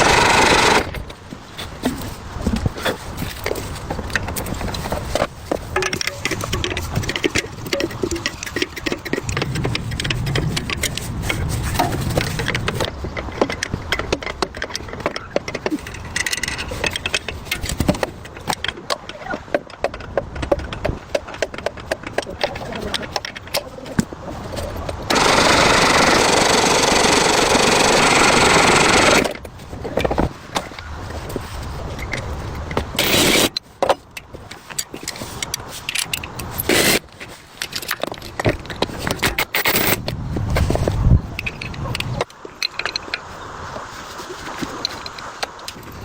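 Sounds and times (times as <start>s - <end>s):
loud steady hiss: 25.1s - 29.3s
tools scraping on metal: 33.0s - 33.7s.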